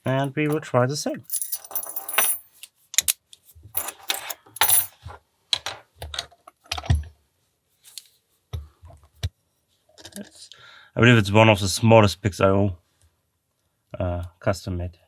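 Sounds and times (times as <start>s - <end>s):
metal clinking and rattling: 1.3s - 2.5s, 3.8s - 4.9s.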